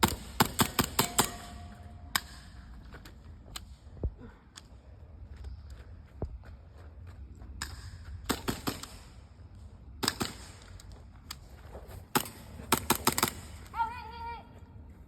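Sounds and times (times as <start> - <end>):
airsoft gun shots: 0.0 - 2.4.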